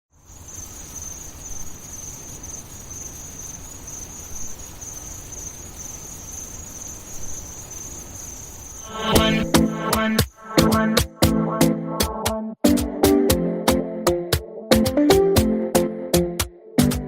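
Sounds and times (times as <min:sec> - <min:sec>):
cricket trilling: 0:00.1 - 0:11.2
loud music: 0:09.0 - 0:17.0.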